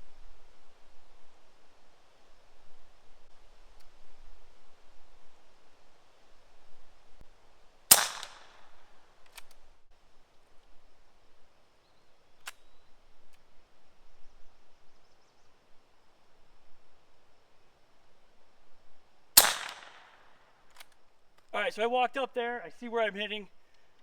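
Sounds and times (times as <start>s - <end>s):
air pistol shot: 7.9s - 8.8s, 19.4s - 20.3s
faint clicks: 9.2s - 9.6s, 20.6s - 21.6s, 23.7s - 24.0s.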